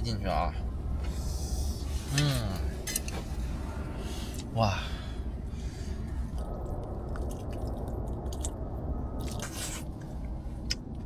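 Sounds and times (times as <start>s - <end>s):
wind rumbling on microphone: 5.2s - 11.0s.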